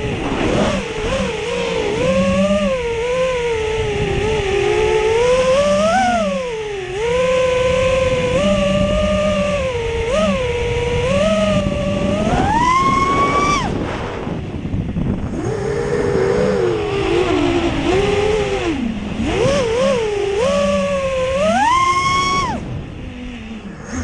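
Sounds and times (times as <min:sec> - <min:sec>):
wind rushing: 0:00.0 - 0:05.0, 0:11.6 - 0:20.2
quadcopter motors whining: 0:00.0 - 0:24.0.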